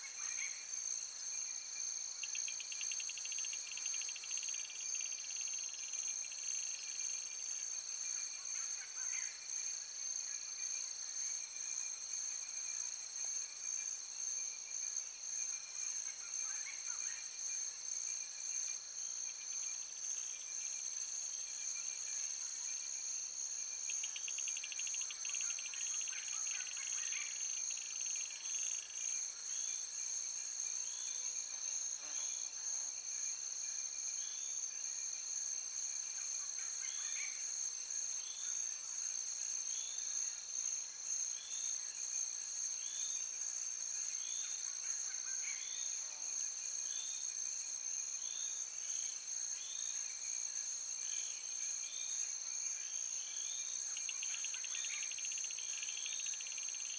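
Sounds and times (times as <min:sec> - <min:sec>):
insects trilling: 0:02.2 - 0:07.0, 0:23.8 - 0:29.3, 0:53.0 - 0:56.9.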